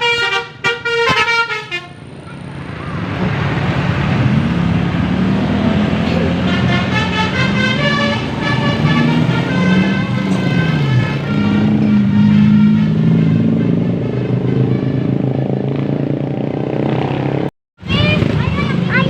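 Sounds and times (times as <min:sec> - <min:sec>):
musical bus horn: 0:00.0 - 0:02.5, 0:06.1 - 0:15.7
bus engine drone: 0:00.0 - 0:19.0.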